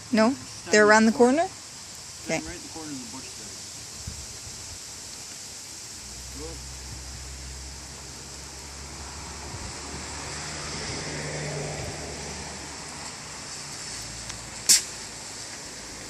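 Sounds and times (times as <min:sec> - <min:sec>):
vehicle passing: 0:06.0 - 0:16.0.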